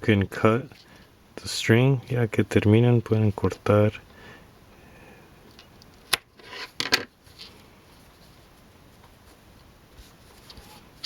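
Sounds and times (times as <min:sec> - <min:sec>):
soft rustle of fabric: 0:07.2 - 0:11.0.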